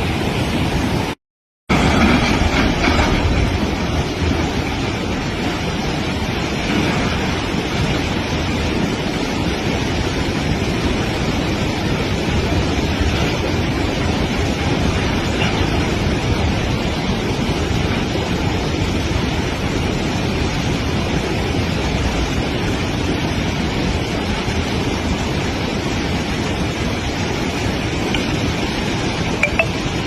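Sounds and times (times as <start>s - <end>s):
floodwater rushing: 0.0s - 30.0s.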